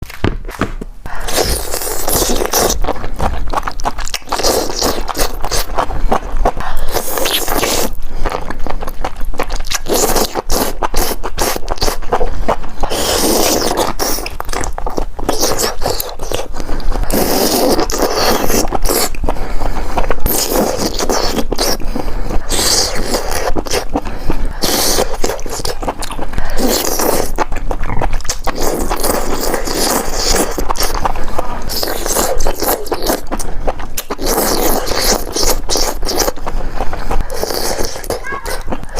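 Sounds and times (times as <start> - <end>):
person chewing and biting: 0.0 - 38.9
wet mouth noises with clicks: 22.6 - 38.9.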